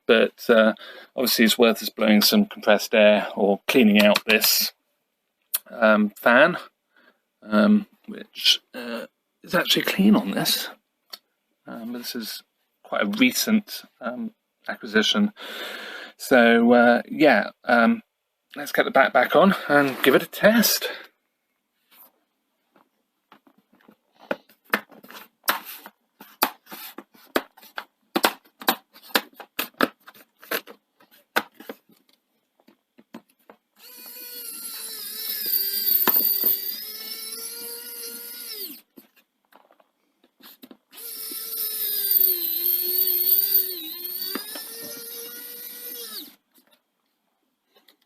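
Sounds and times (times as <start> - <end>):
electric screwdriver whine: 33.8 - 38.8, 40.9 - 46.4.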